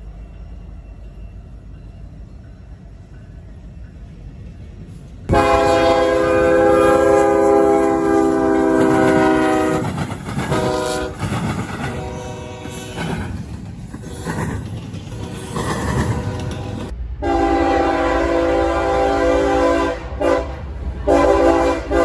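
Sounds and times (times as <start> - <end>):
train rumble and wheel clatter: 0.0 - 22.0
locomotive air horn blasts: 5.3 - 11.2, 11.9 - 13.0, 16.1 - 22.0.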